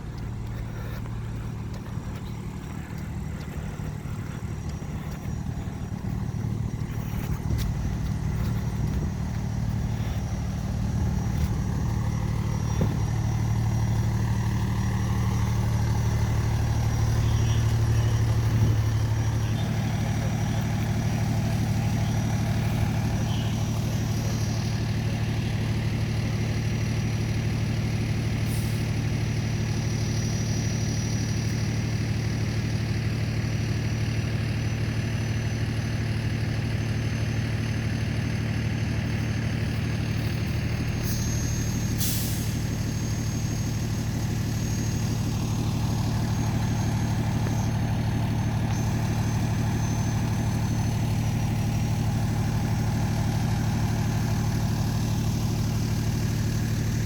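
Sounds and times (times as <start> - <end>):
diesel engine idling: 0.0 - 57.0.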